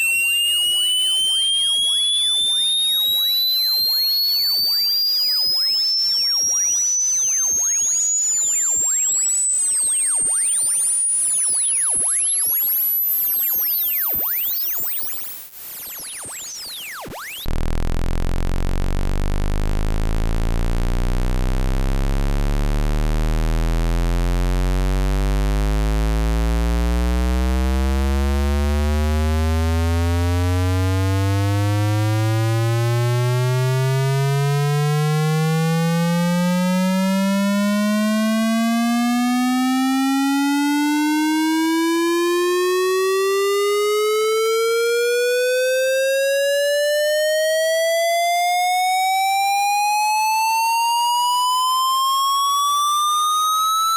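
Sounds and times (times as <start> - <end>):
high tone sweeping upward: 0.0 - 17.6, 27.2 - 53.9
buzzy low tone gliding upward: 0.0 - 34.9.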